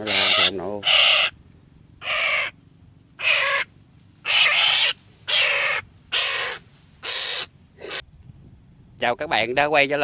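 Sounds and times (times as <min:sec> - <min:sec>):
bird rasping calls: 0:00.0 - 0:01.4, 0:02.0 - 0:02.6, 0:03.2 - 0:08.0.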